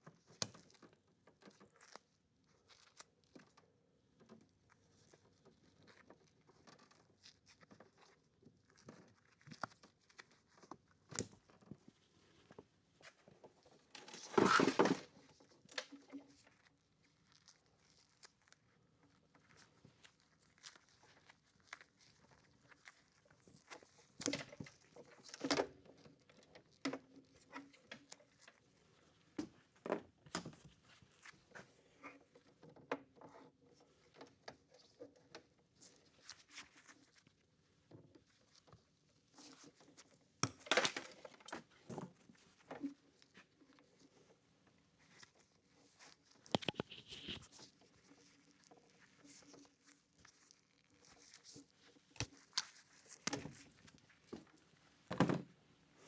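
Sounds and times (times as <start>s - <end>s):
rustling: 45.0s - 54.9s
small clicks and taps: 46.5s - 47.4s.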